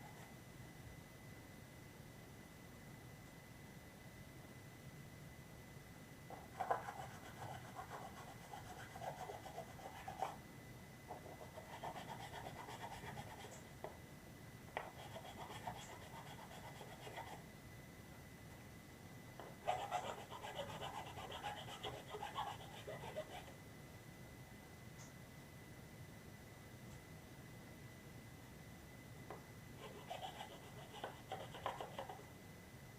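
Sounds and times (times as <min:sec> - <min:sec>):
sandpaper scratching on plastic: 0:14.9 - 0:17.4, 0:19.7 - 0:23.5, 0:29.8 - 0:32.1.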